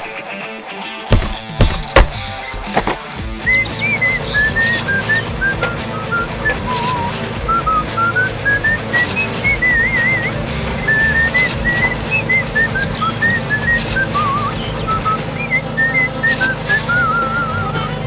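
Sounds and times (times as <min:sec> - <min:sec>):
steady music backing: 0:00.0 - 0:18.0
whistled melody with trills: 0:01.9 - 0:18.0.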